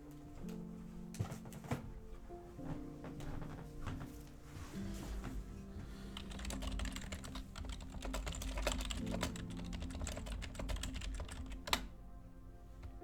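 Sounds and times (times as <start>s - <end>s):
fast typing on keyboard: 6.1s - 11.9s.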